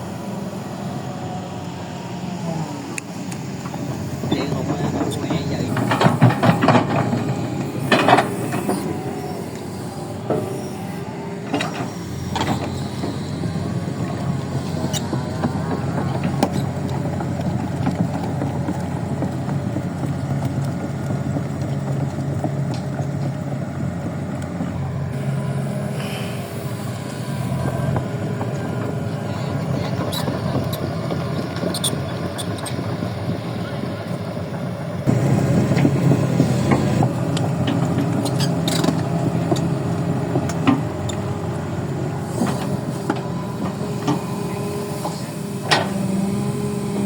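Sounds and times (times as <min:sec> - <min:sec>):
excavator engine humming: 0:00.0 - 0:47.0
knocks and clanks: 0:03.6 - 0:09.0.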